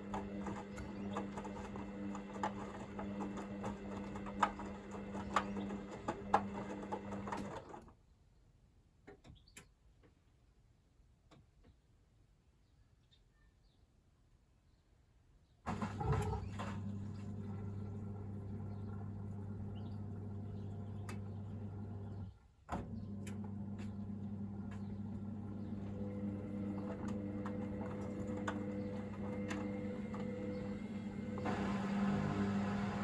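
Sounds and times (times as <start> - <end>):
drain pump humming: 0.0 - 7.7, 15.7 - 33.0.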